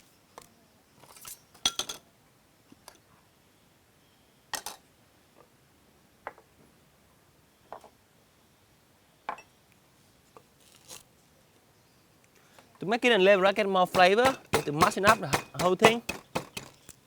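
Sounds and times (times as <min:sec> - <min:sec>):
kitchen utensils knocking and clinking: 0:13.8 - 0:16.9.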